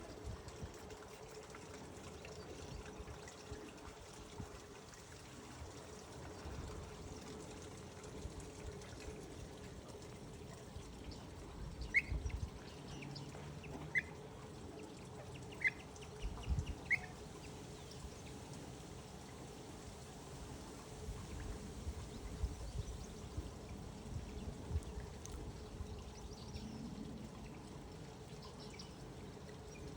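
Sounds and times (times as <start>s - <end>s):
steady wash of water: 0.0s - 29.9s.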